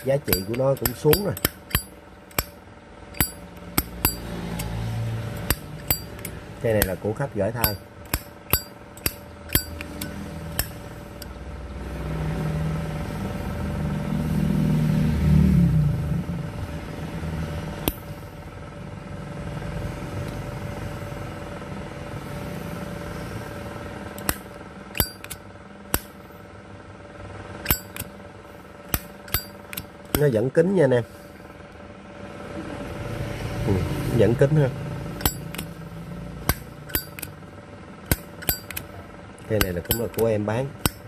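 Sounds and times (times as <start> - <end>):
vehicle passing: 3.9 - 6.7, 9.8 - 17.8, 32.3 - 35.2.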